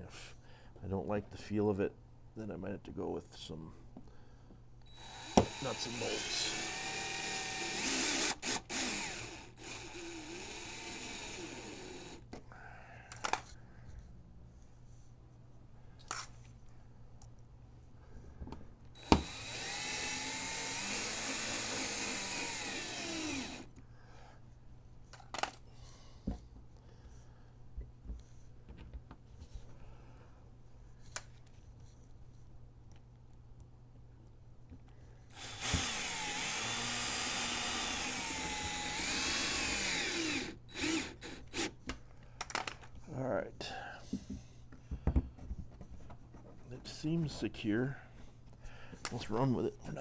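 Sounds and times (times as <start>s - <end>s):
power drill driving screws: 4.9s - 12.2s, 19.0s - 23.7s, 35.3s - 41.8s.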